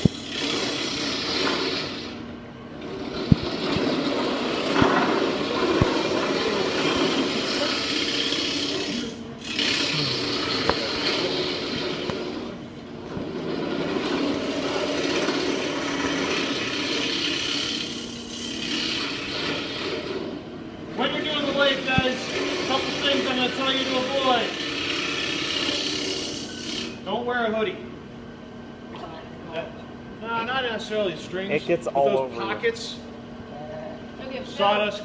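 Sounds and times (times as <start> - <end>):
wood lathe cutting wood: 0.0 - 2.2, 2.8 - 20.4, 21.0 - 27.0.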